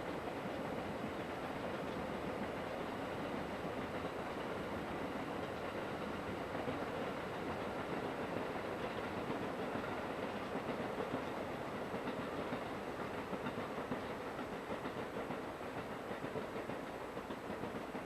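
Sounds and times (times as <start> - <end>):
train wheels rumbling on rail: 0.0 - 18.0
clicking over rail joints: 5.4 - 18.0.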